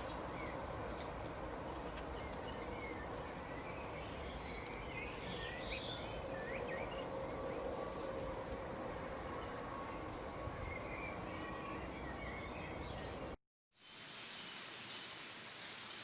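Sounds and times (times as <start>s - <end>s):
wild birds chirping: 0.0s - 13.4s
outdoor background hiss: 9.3s - 16.0s.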